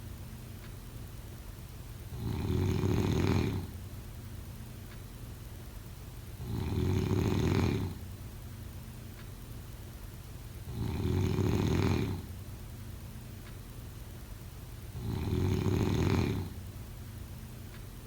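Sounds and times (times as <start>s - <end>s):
snoring: 2.1s - 3.7s, 6.4s - 8.0s, 10.6s - 12.3s, 14.9s - 16.6s.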